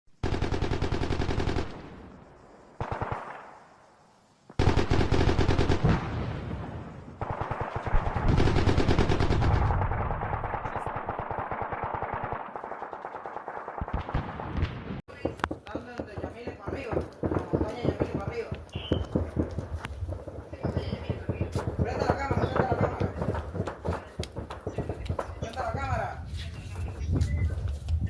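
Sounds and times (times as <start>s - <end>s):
automatic gunfire bursts: 0.2s - 1.9s, 4.6s - 6.0s, 7.2s - 26.0s
gunfire echo: 0.2s - 3.8s, 4.5s - 27.0s.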